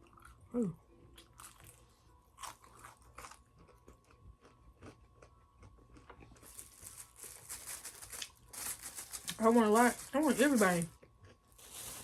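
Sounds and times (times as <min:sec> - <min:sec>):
crunching fried chicken: 0:01.0 - 0:09.8.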